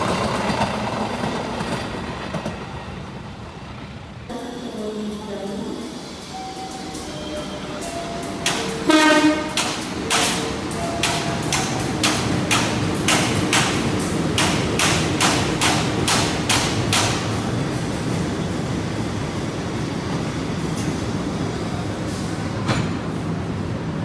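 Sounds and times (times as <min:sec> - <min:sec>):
train rumble: 0:00.0 - 0:24.0
wheels clacking over rail joints: 0:06.7 - 0:18.7
train horn blast: 0:08.5 - 0:10.4.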